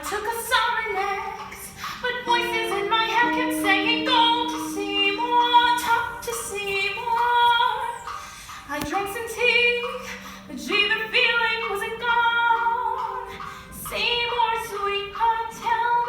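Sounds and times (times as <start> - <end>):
woman singing: 0.0 - 8.0
long held accompanying notes: 0.7 - 13.4.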